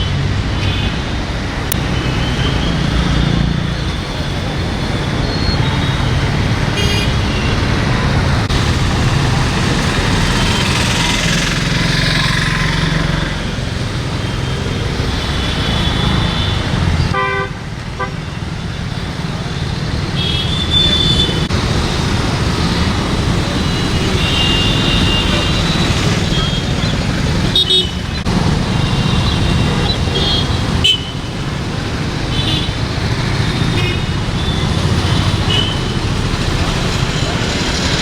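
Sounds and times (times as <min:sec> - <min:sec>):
road traffic: 0:00.0 - 0:38.0
vehicle horns honking: 0:06.8 - 0:07.6, 0:15.5 - 0:18.2, 0:20.2 - 0:21.5, 0:23.7 - 0:28.2, 0:28.8 - 0:31.3, 0:32.3 - 0:32.8, 0:33.6 - 0:36.1.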